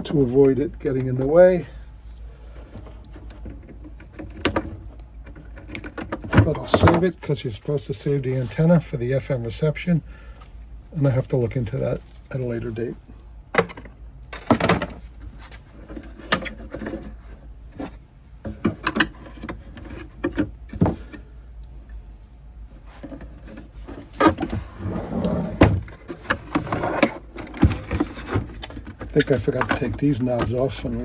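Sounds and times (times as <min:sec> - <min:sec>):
hands handling radio chassis: 0:22.8 - 0:31.0.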